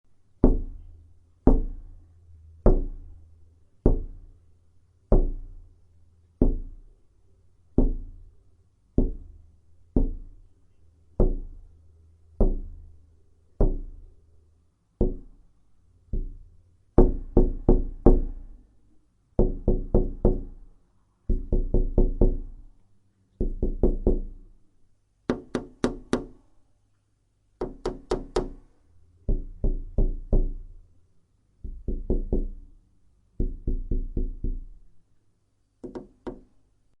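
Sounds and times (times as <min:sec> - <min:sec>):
tapping on a window pane: 0:00.4 - 0:00.9, 0:01.5 - 0:01.9, 0:02.7 - 0:03.1, 0:03.8 - 0:04.2, 0:05.1 - 0:05.6, 0:06.4 - 0:06.8, 0:09.0 - 0:10.4, 0:11.2 - 0:11.6, 0:12.4 - 0:12.9, 0:13.6 - 0:14.0, 0:15.0 - 0:15.4, 0:16.1 - 0:18.4, 0:19.4 - 0:20.6, 0:21.3 - 0:22.6, 0:23.4 - 0:24.4, 0:25.3 - 0:26.4, 0:27.6 - 0:28.6, 0:29.2 - 0:30.8, 0:31.6 - 0:32.7, 0:33.4 - 0:34.8, 0:35.8 - 0:36.6.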